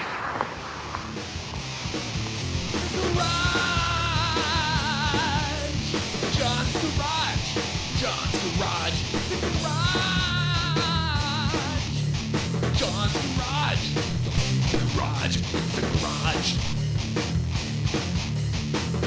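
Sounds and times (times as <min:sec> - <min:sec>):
hard rock music: 0:00.1 - 0:19.0.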